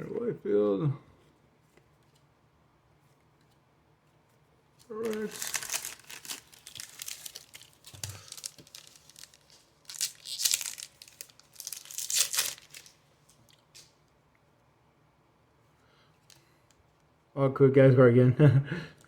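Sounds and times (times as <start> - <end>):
card pack wrapper crinkling: 4.9 - 13.9.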